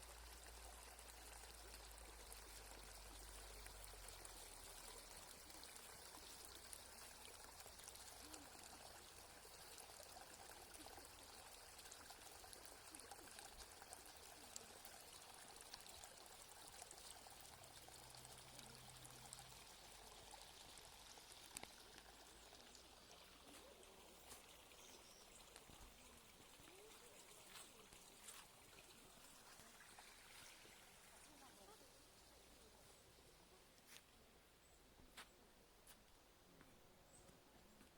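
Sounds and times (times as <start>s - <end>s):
trickle of running water: 0.0s - 33.2s.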